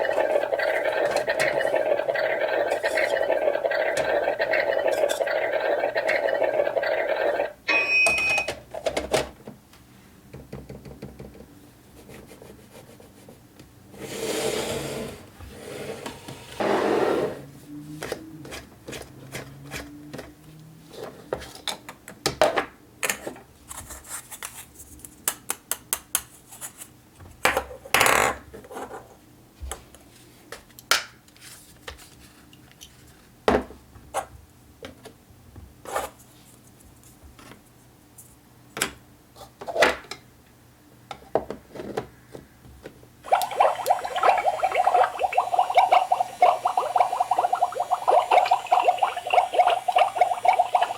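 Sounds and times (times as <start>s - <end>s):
short electronic beep: 7.6s - 8.5s.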